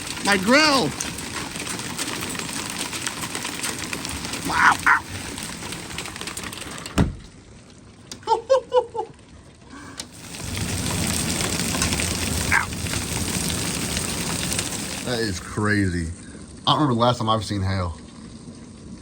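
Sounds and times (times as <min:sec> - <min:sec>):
hail and heavy rain: 0:00.0 - 0:07.0, 0:09.8 - 0:17.8
short high yelps: 0:04.5 - 0:05.1.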